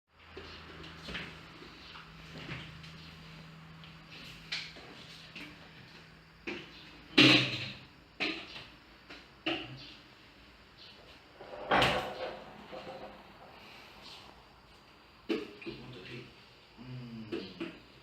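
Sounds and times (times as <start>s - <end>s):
faint low hum: 0.2s - 18.0s.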